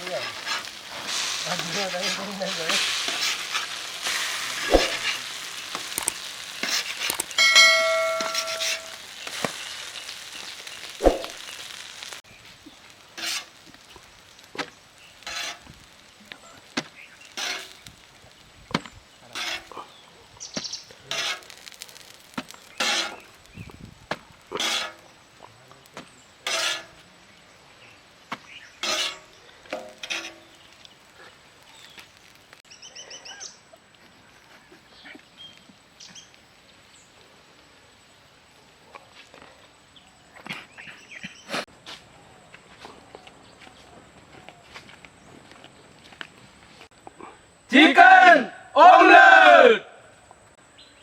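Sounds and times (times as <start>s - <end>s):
omelette sizzling in a pan: 0.0s - 32.7s
metal clanks: 7.1s - 9.0s
ringing metallic clang: 7.4s - 9.0s.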